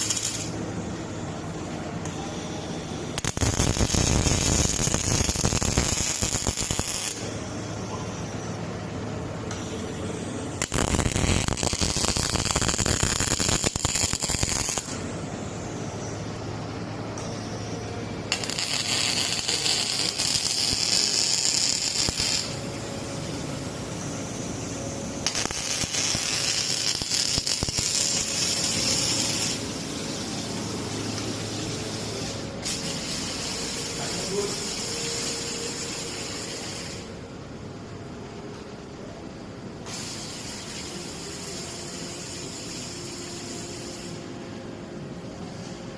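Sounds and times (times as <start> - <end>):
welding arc crackling: 0.0 - 0.6, 3.1 - 7.4, 10.6 - 15.1, 18.2 - 22.8, 23.8 - 30.8
steady machine hum: 0.0 - 45.9.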